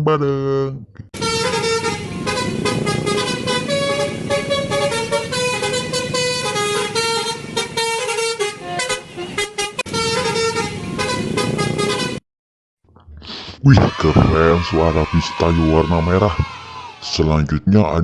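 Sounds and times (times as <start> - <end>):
bus horn honking notes: 1.2 - 12.2
steady noisy rumble: 1.2 - 12.2.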